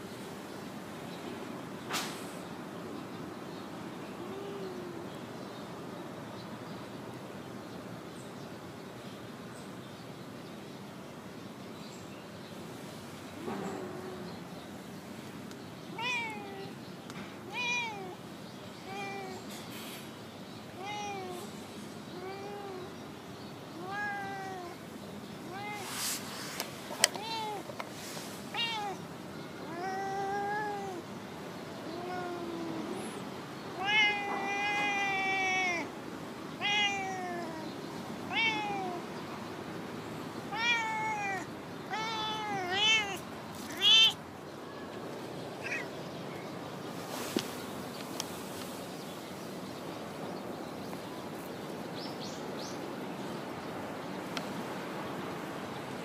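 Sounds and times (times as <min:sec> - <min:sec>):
cat meowing: 0:15.9 - 0:16.8, 0:17.5 - 0:18.2, 0:18.8 - 0:19.4, 0:20.8 - 0:21.5, 0:23.8 - 0:24.8, 0:25.4 - 0:26.0, 0:27.1 - 0:27.7, 0:28.5 - 0:29.0, 0:29.6 - 0:31.0, 0:31.8 - 0:33.0, 0:33.8 - 0:35.9, 0:36.6 - 0:37.7, 0:38.3 - 0:39.1, 0:40.5 - 0:44.9, 0:45.6 - 0:45.9.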